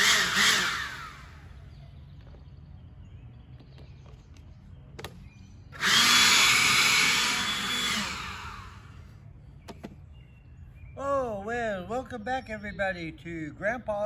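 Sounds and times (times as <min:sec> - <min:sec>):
small motor running: 0:00.0 - 0:02.0, 0:05.8 - 0:09.1.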